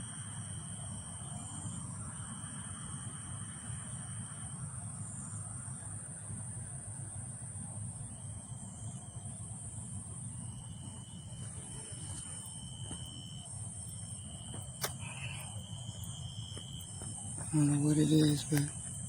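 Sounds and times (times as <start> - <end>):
crickets chirring: 0.0 - 19.0
thin high whine: 8.6 - 19.0
sharp click: 14.8 - 15.0.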